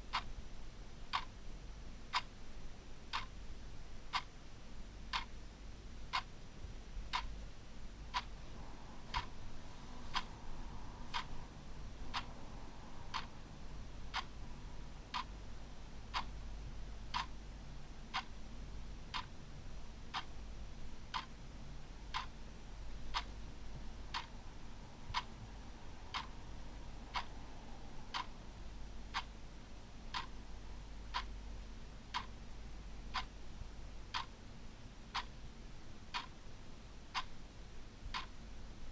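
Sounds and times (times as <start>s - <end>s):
faint low hum: 0.0s - 38.9s
clock ticking: 3.1s - 3.3s, 5.1s - 5.3s, 8.1s - 8.3s, 9.0s - 10.4s, 12.0s - 12.3s, 13.1s - 13.3s, 15.1s - 15.3s, 17.1s - 17.3s, 19.1s - 19.3s, 21.1s - 21.3s, 22.1s - 22.4s, 23.1s - 23.4s, 24.1s - 24.3s, 26.1s - 26.4s, 27.1s - 27.3s, 28.1s - 28.3s, 30.1s - 30.4s, 31.1s - 31.3s, 32.1s - 32.4s, 34.1s - 34.4s, 35.1s - 35.3s, 36.1s - 36.3s, 38.1s - 38.3s.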